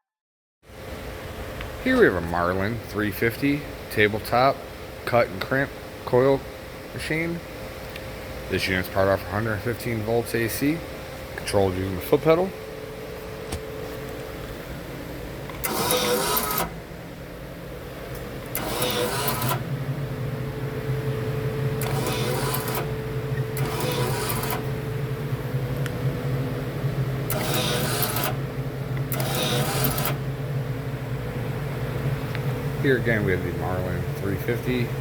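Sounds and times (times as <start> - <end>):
machine hum: 0.7 - 35.0
crimp machine cycling: 15.4 - 16.8, 18.1 - 19.8, 21.6 - 24.8, 27.2 - 30.3
deeper hum: 19.4 - 35.0.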